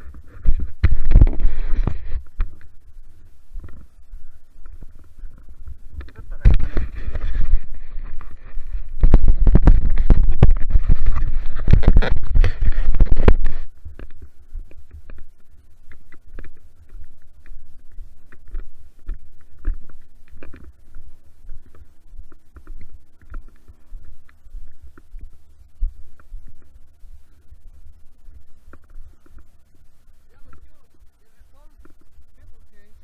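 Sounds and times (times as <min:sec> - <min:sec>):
low steady rumble: 0:00.0 - 0:33.0
microphone rustling: 0:00.0 - 0:33.0
small clicks and snaps: 0:09.1 - 0:25.3, 0:30.3 - 0:30.8.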